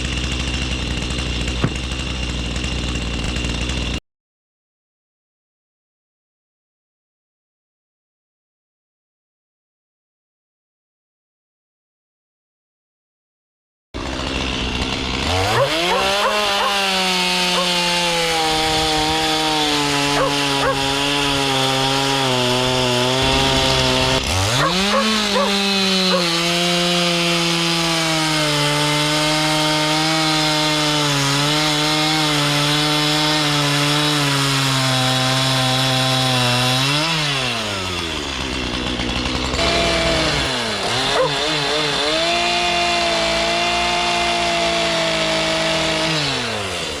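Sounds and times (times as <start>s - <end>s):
chainsaw cutting log: 0.0s - 4.0s, 14.0s - 47.0s.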